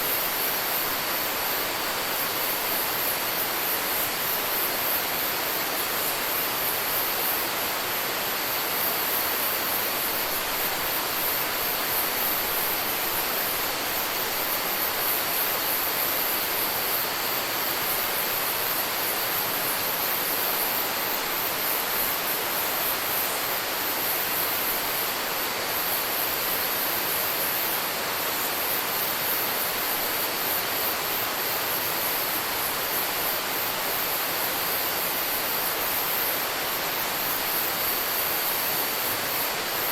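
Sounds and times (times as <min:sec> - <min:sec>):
high-pitched insect chorus: 0:00.0 - 0:39.9.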